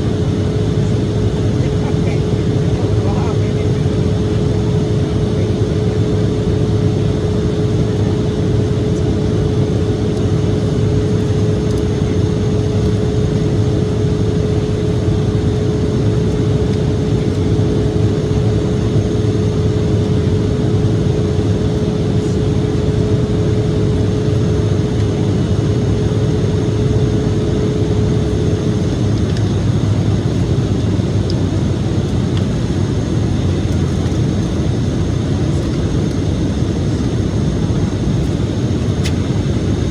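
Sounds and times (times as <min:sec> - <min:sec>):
jet engines droning: 0:00.0 - 0:39.9
steady hum: 0:00.0 - 0:39.9.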